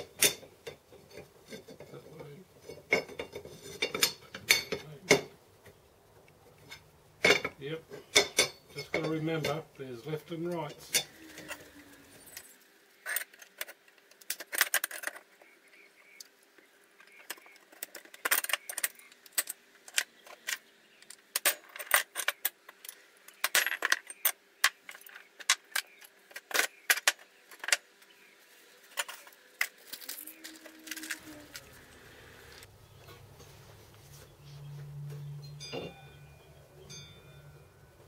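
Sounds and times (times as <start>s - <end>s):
small metal parts clinking: 0.0s - 5.3s, 10.5s - 15.4s, 17.0s - 28.0s, 28.8s - 32.7s
faint steady hum: 15.3s - 38.0s.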